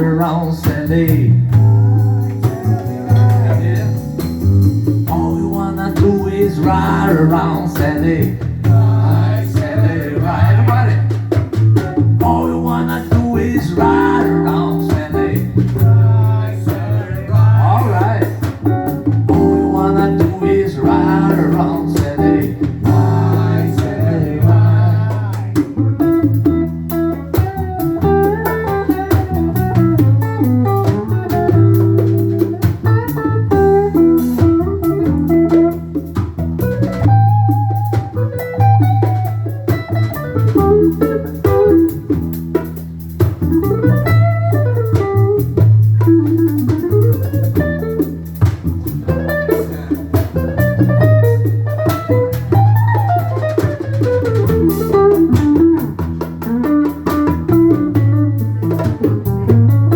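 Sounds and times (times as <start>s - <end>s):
bass guitar: 0.0s - 59.9s
drum kit: 0.0s - 59.9s
electric guitar solo with bending notes: 25.8s - 42.1s, 43.5s - 59.9s.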